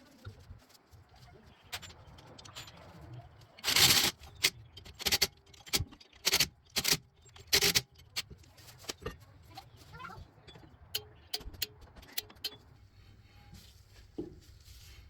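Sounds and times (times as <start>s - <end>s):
metal tools clanking: 1.6s - 9.8s.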